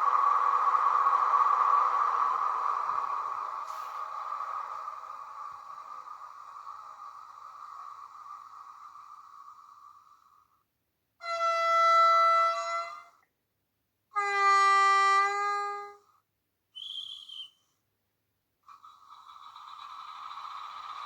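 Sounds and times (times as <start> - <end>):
two-tone locomotive horn: 11.2 - 13.2, 14.1 - 16.1.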